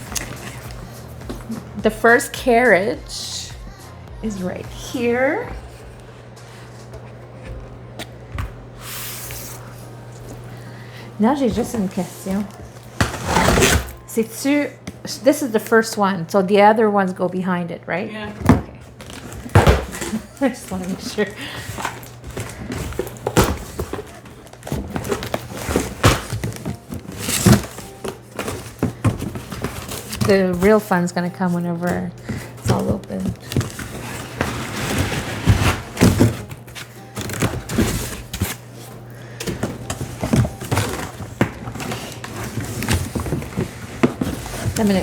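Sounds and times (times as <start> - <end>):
cardboard boxes being handled: 11.4 - 14.1, 18.9 - 45.0.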